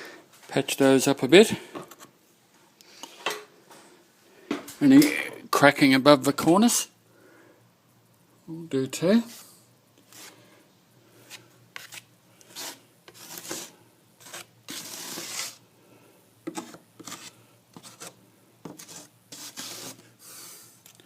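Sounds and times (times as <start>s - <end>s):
plastering tool scraping plaster: 11.2s - 15.6s, 16.4s - 20.2s.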